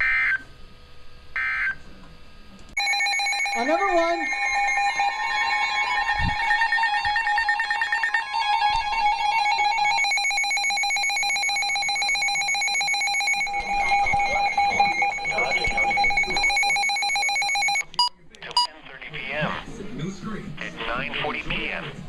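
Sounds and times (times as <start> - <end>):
electronic alert tone: 2.8 - 17.8.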